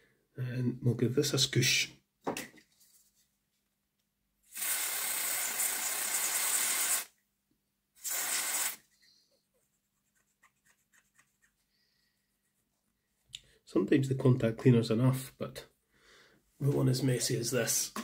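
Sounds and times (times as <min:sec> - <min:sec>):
aerosol spraying: 0:04.5 - 0:07.1, 0:08.0 - 0:08.9.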